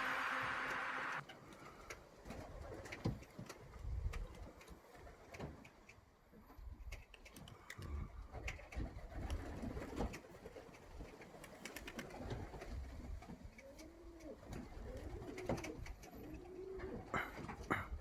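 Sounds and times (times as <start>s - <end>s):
pigeons cooing: 13.7s - 18.0s.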